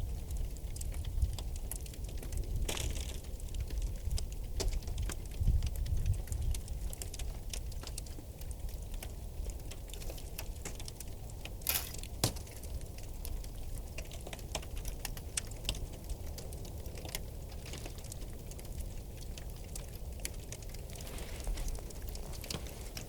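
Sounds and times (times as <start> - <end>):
river ice cracking: 1.6 - 5.1, 6.8 - 23.0.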